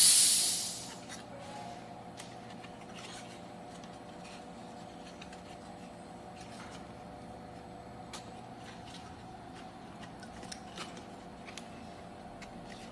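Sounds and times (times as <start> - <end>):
steady hum: 0.0 - 12.9
paper rustling and scraping: 2.2 - 6.9.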